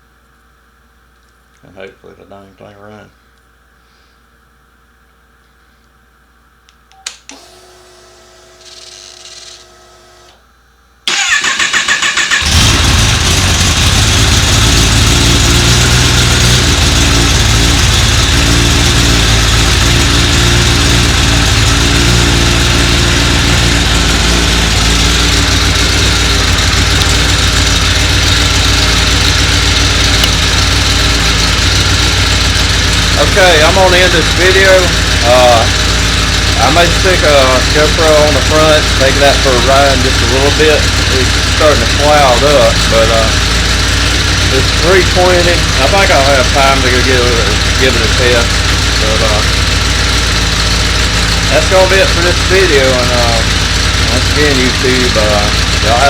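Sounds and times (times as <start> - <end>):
ignition click: 6.7 - 7.6
starter motor cranking: 7.3 - 10.4, 11.1 - 56.0
motorcycle engine idling: 12.0 - 56.0.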